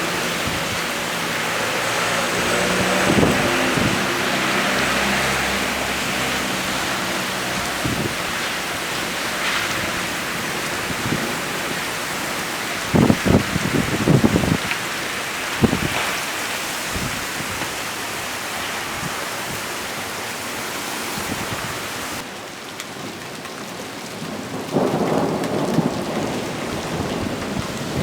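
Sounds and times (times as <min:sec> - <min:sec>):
rolling thunder rumble: 0:00.0 - 0:16.3, 0:24.5 - 0:28.0
heavy rain hissing: 0:00.0 - 0:22.3.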